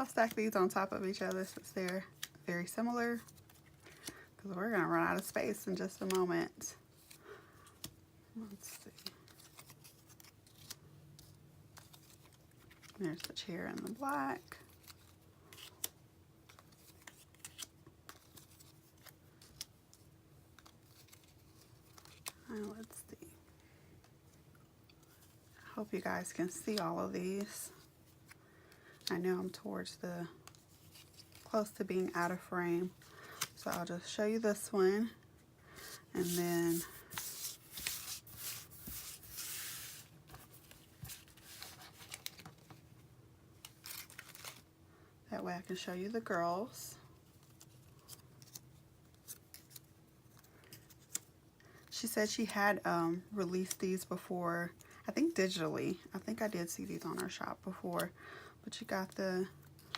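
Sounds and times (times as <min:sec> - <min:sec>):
paper rustling: 0:16.5 - 0:23.1, 0:35.8 - 0:42.9, 0:43.6 - 0:44.6
paper rustling and sliding: 0:35.8 - 0:42.8.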